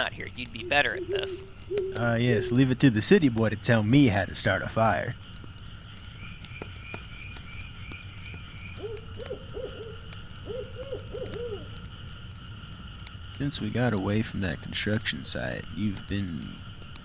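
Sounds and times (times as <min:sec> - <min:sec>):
night ambience with faint high tones: 0:00.0 - 0:17.0
owl hooting: 0:00.4 - 0:02.7, 0:08.6 - 0:11.9
light ticks: 0:05.2 - 0:17.0.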